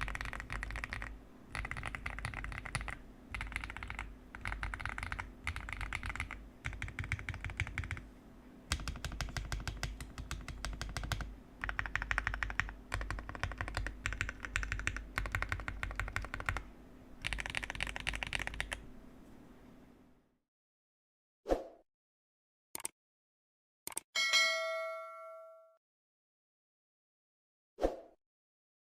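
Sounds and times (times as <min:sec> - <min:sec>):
mechanical keyboard typing: 0:00.0 - 0:08.0, 0:08.7 - 0:18.8, 0:23.9 - 0:24.1.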